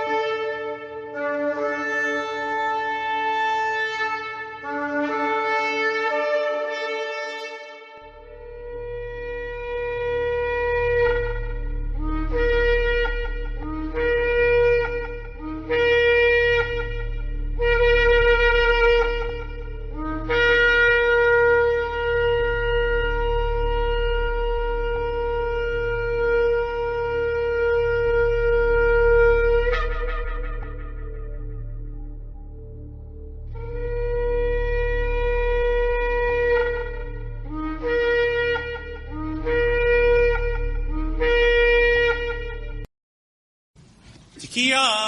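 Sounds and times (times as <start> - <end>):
shofar blasts: 0.0 - 32.6, 33.5 - 42.8.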